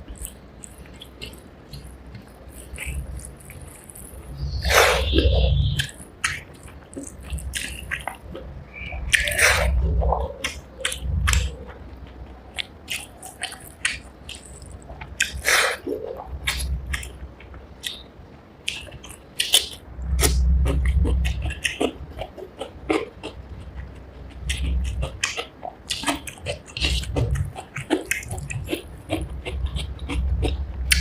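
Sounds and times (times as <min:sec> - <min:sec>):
wet chewing and lip smacks: 0:00.0 - 0:04.3, 0:05.8 - 0:18.0, 0:18.6 - 0:31.0.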